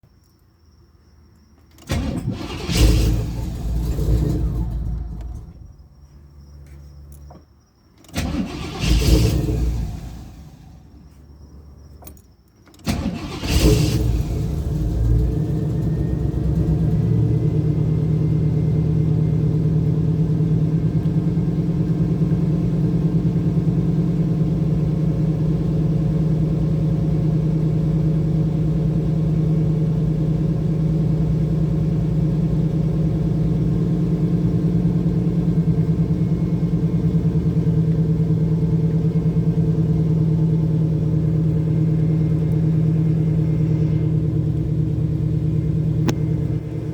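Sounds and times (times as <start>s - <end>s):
car engine starting and idling: 1.6s - 46.9s.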